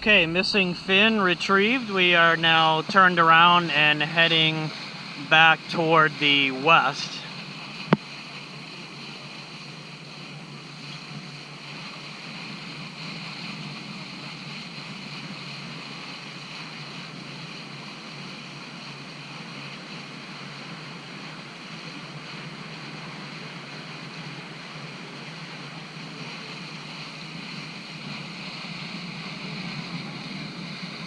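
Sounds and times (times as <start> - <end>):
boat engine running: 0.0 - 31.0
water rushing past hull: 0.0 - 31.0
wind: 0.0 - 31.0.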